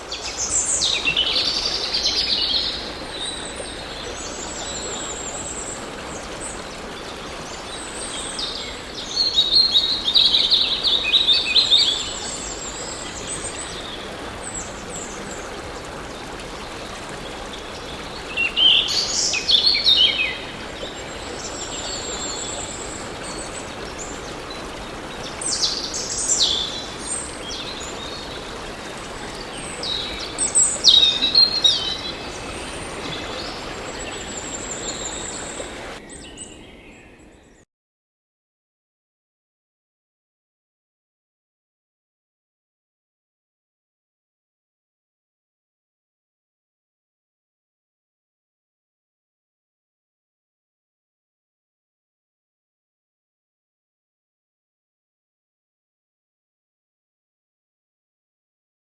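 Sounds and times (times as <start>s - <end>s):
flowing water: 0.0s - 37.4s
birds chirping: 9.8s - 37.6s.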